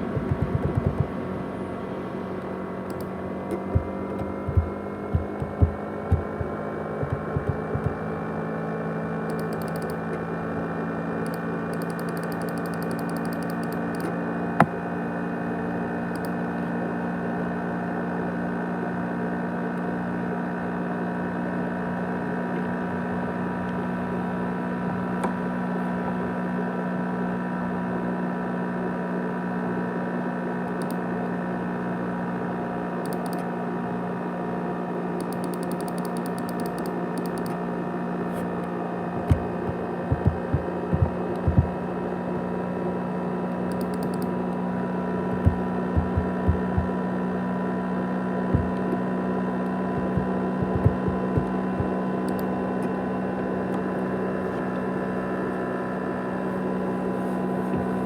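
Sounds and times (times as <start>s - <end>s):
hard disk drive whirring: 0.0s - 18.2s, 30.1s - 58.0s
sharp click: 2.9s - 4.6s, 9.3s - 10.2s, 11.2s - 14.2s, 16.1s - 16.4s, 30.7s - 31.0s, 33.0s - 33.5s, 35.2s - 37.6s, 43.7s - 44.4s.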